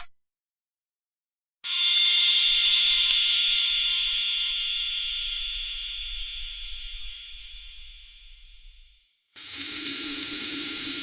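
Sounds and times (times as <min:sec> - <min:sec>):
steam hissing with whistle: 0:01.7 - 0:08.4, 0:09.4 - 0:11.0.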